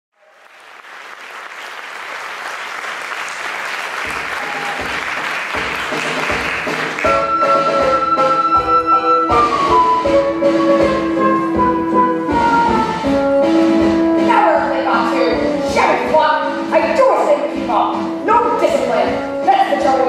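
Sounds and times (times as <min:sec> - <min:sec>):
audience applause: 0:00.2 - 0:07.4
low music beat: 0:04.8 - 0:16.0
music melody: 0:07.0 - 0:20.0.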